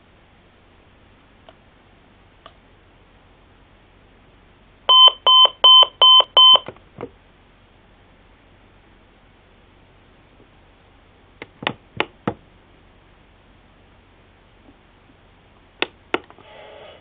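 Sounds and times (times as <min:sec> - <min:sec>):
alarm clock beeping: 0:04.9 - 0:06.6.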